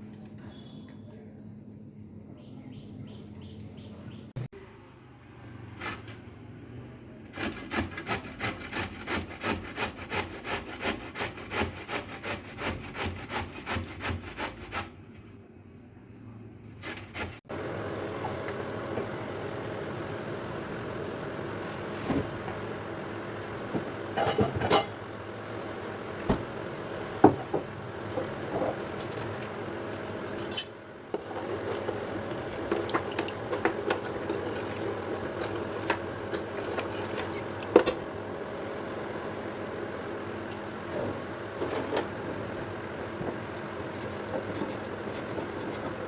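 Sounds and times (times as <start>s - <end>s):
coconut grating: 7.2s - 15.0s, 16.8s - 17.5s.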